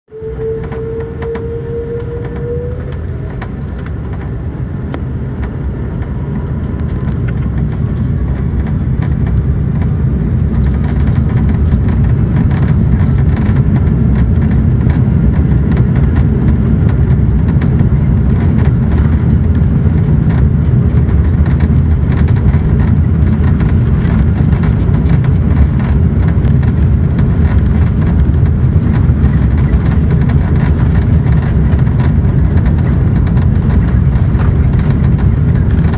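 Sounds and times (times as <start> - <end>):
jet engines spooling up: 0.1 - 9.2.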